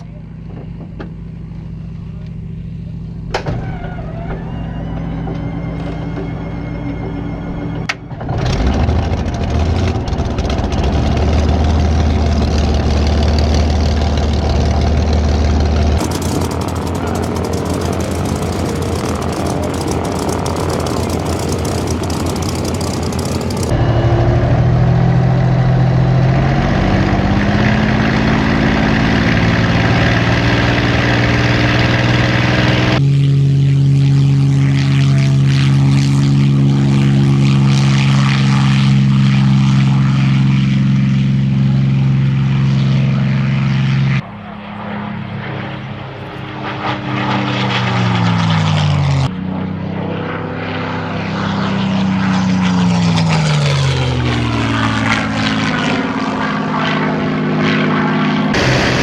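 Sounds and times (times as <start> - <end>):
aircraft piston engine running: 10.4 - 24.2, 50.2 - 59.0.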